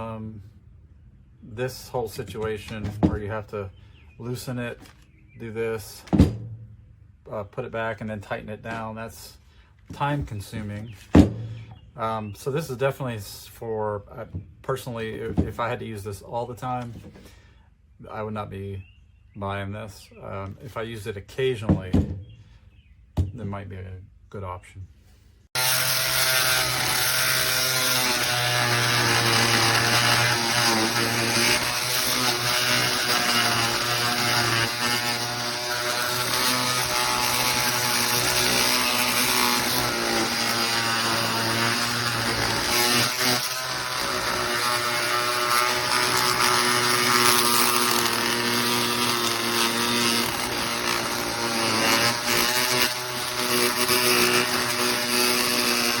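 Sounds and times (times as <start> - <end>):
oscillating multi-tool buzzing: 25.6 - 56.0.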